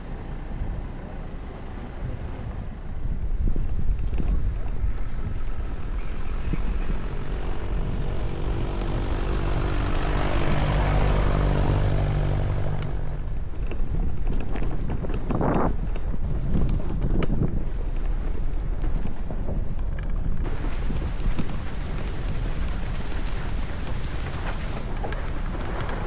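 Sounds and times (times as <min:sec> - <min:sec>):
engine passing by: 0:00.0 - 0:13.9
wind noise on microphone: 0:01.6 - 0:26.0.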